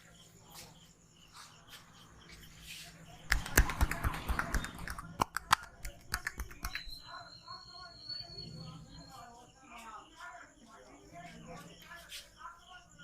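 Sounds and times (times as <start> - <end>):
hand slaps and taps on head: 3.2 - 7.0.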